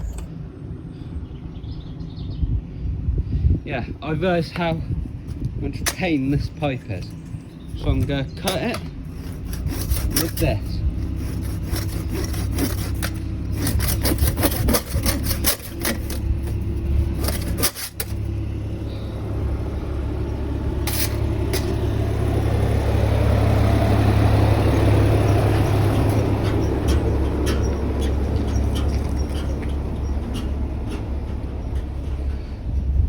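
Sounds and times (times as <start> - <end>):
vehicle engine running: 6.9 - 33.0
saw cutting metal pipe: 7.8 - 18.4, 20.8 - 21.9.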